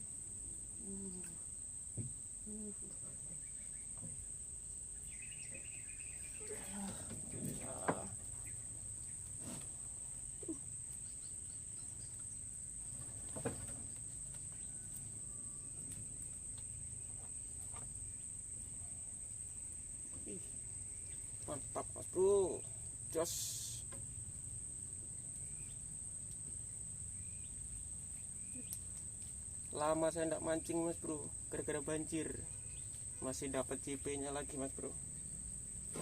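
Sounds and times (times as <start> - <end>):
low murmurs: 0.8 - 1.5, 6.4 - 8.4
high-pitched insect drone: 21.5 - 23.9.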